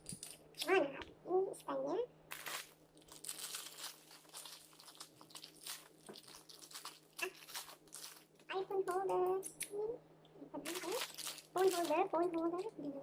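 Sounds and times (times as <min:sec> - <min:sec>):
plastic packaging crinkling: 0:02.3 - 0:08.5, 0:10.6 - 0:13.0.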